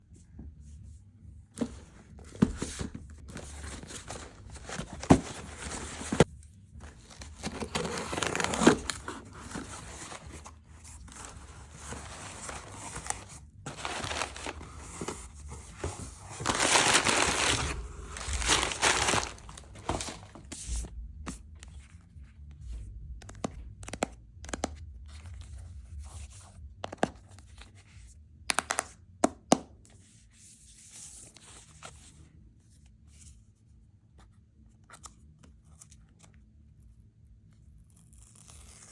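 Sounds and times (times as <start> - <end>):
paper tearing and crinkling: 7.0 - 20.5.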